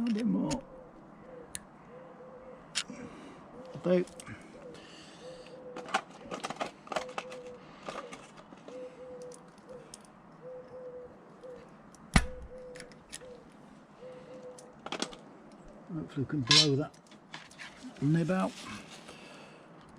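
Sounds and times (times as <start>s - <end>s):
pigeon cooing: 0.2s - 15.2s.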